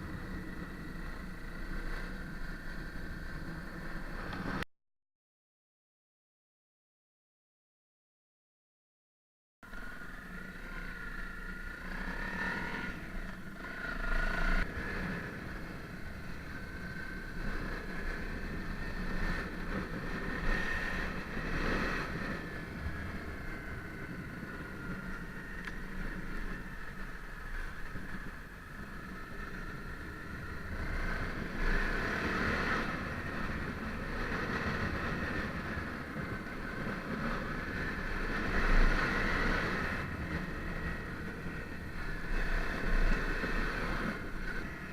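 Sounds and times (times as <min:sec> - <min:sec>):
motorcycle engine running: 0:00.0 - 0:04.6, 0:09.6 - 0:44.9
wind noise on microphone: 0:14.1 - 0:44.9.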